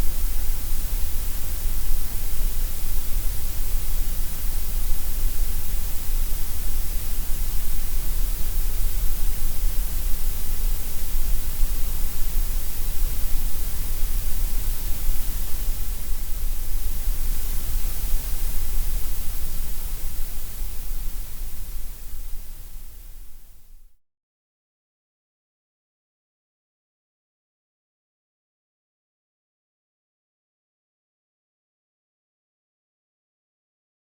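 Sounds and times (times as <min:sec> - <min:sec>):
white noise hiss: 0:00.0 - 0:24.0.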